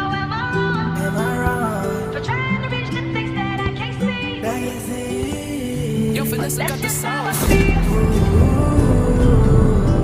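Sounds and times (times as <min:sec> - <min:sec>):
song with heavy bass line: 0:06.0 - 0:10.0.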